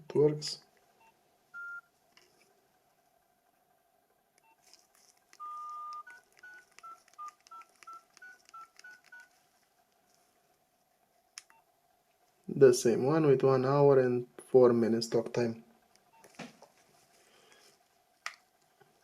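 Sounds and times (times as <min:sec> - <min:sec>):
mobile phone beeps: 0:01.0 - 0:01.9, 0:04.4 - 0:04.7, 0:05.4 - 0:09.3
phone key clicks: 0:04.4 - 0:09.3.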